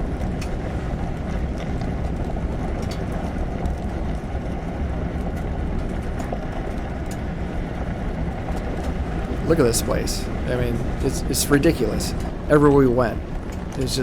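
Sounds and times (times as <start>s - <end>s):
vehicle road and engine rumble: 8.3s - 14.0s.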